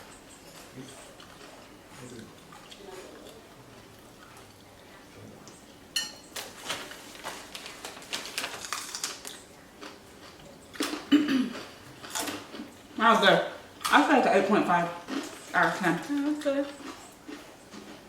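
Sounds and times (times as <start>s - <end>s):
cutlery clinking on dishware: 6.0s - 6.3s
crisp crackling: 6.4s - 9.5s.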